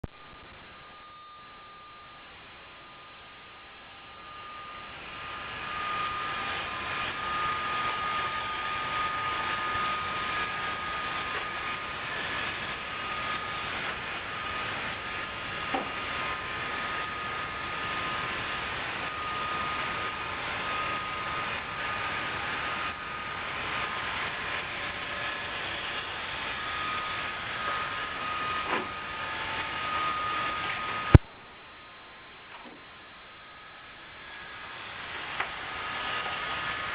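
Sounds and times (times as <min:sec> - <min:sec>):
robot vacuum whirring: 0:04.0 - 0:31.2.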